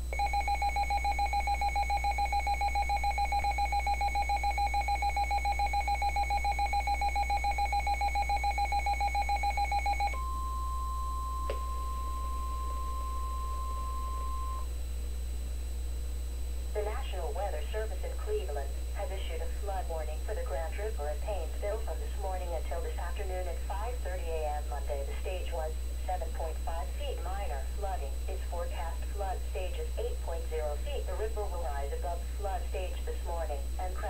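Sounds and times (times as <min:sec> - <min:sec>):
steady warning alarm tone: 0:00.0 - 0:14.7
rapid electronic alert beeps: 0:00.2 - 0:10.2.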